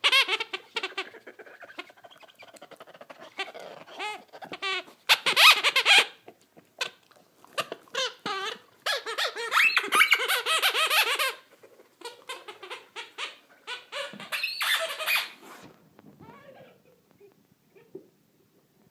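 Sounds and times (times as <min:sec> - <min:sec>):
squeaky rubber ball squeaking: 0:00.0 - 0:01.0, 0:03.4 - 0:06.2, 0:07.9 - 0:11.4, 0:12.0 - 0:15.4.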